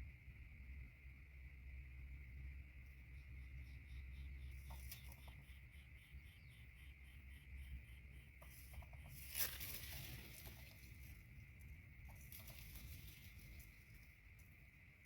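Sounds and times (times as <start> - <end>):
insect drone: 0.0 - 15.0
light rustling ticks: 4.5 - 5.4, 8.4 - 14.6.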